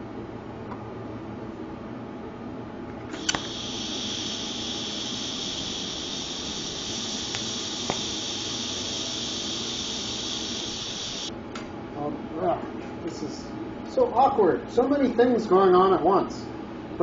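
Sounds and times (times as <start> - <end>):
arc striking click: 3.2 - 11.3
welding arc hissing: 3.2 - 11.3.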